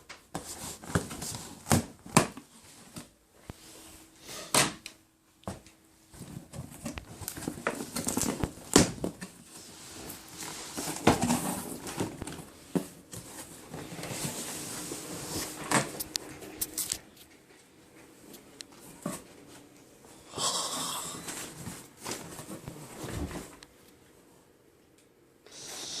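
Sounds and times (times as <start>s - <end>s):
packaging rustling and crackling: 6.1s - 17.4s.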